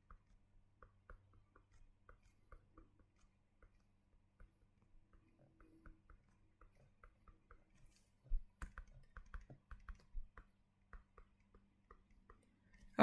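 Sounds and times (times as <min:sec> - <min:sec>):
stylus tapping on drawing tablet: 0:00.0 - 0:12.9.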